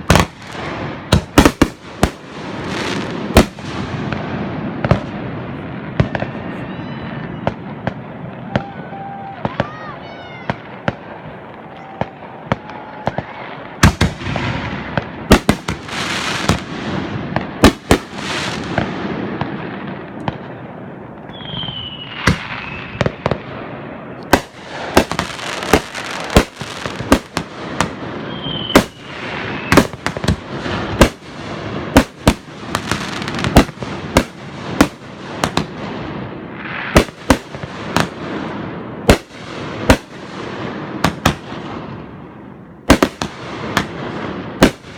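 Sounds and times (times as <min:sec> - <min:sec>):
fireworks crackle: 0:00.0 - 0:44.9
falling firework whistle: 0:08.4 - 0:10.6, 0:21.2 - 0:23.4, 0:28.2 - 0:30.1.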